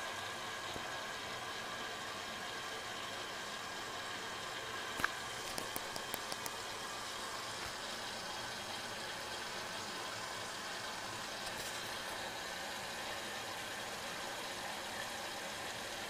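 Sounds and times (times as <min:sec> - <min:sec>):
sharp clicks: 0:05.0 - 0:06.6.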